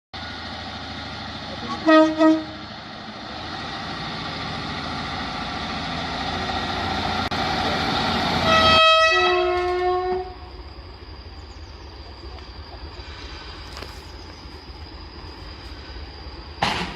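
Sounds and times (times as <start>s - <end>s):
train rumble: 0.2s - 16.9s
multi-tone train horn blast: 1.6s - 2.6s, 8.3s - 10.5s.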